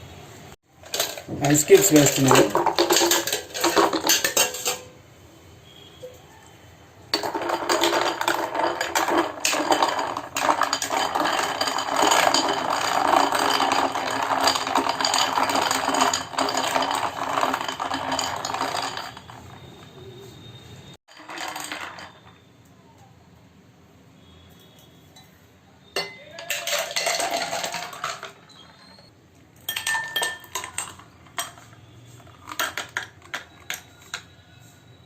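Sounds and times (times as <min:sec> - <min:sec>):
mixer crushing ice cubes: 0:00.8 - 0:04.8, 0:07.2 - 0:20.0, 0:26.3 - 0:28.9, 0:29.8 - 0:34.4.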